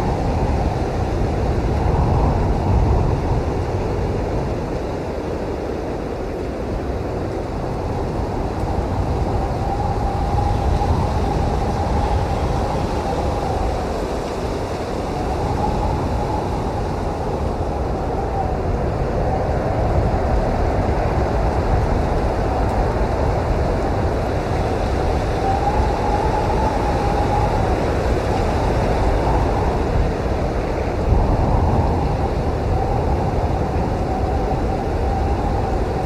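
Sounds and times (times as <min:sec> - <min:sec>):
blizzard wind rumbling: 0:00.0 - 0:36.0
wavering wind whistle: 0:07.8 - 0:36.0.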